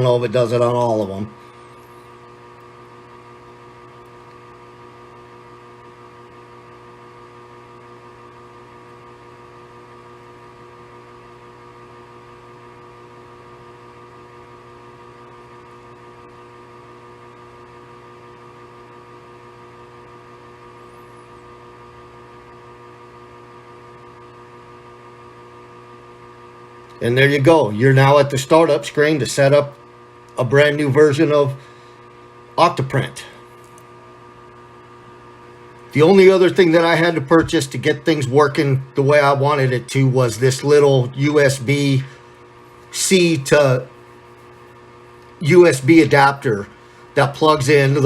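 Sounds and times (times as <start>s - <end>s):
electrical hum: 0.0s - 48.0s.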